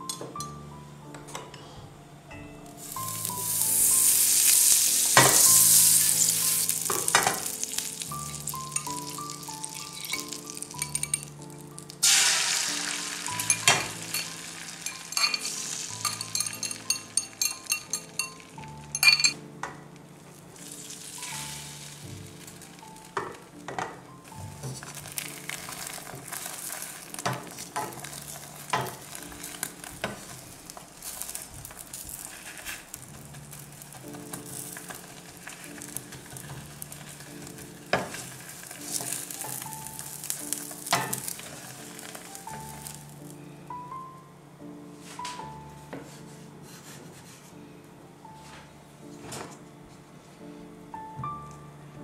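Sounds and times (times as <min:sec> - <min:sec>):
background music with held notes: 0:00.0 - 0:52.0
food sizzling in a pan: 0:02.8 - 0:19.3, 0:20.4 - 0:23.6, 0:24.2 - 0:43.4.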